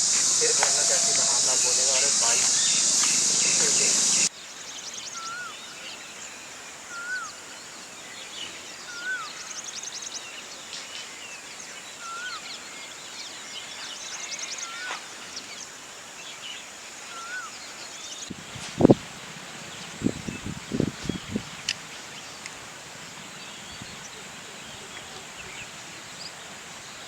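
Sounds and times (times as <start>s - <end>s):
bird whistling: 0.0s - 4.3s
faint high chirps: 0.0s - 4.3s.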